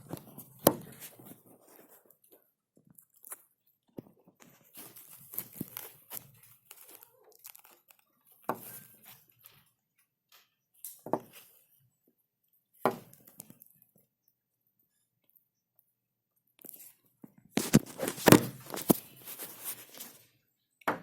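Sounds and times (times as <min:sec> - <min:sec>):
packaging rustling and crinkling: 0:04.4 - 0:08.0, 0:17.6 - 0:20.2
loud packaging crackles: 0:04.8 - 0:08.0, 0:17.6 - 0:20.2.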